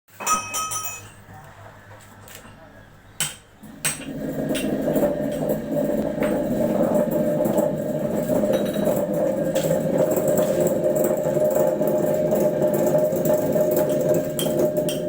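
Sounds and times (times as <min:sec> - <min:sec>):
metal clinks: 0:00.2 - 0:01.2
sharp knocks: 0:03.2 - 0:04.8
grinder running: 0:03.6 - 0:15.0.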